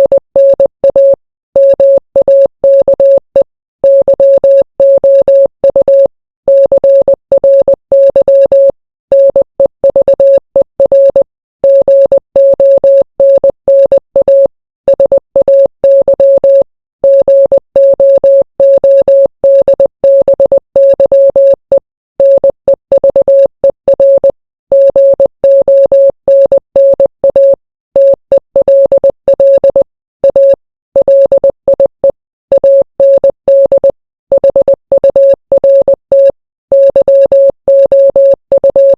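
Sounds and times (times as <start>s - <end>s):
morse code beeps: 0.0s - 38.9s.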